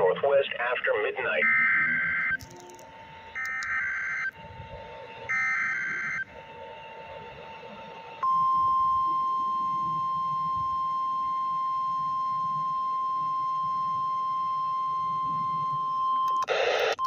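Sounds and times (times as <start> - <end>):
radio hiss: 0.0 - 1.5, 16.5 - 17.0
steady warning alarm tone: 1.4 - 16.3.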